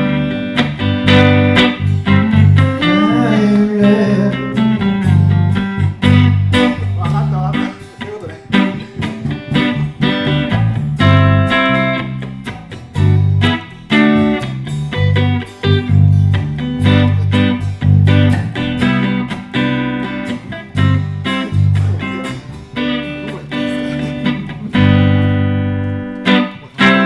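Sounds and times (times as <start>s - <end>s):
guitar chords ringing: 0.0s - 27.0s.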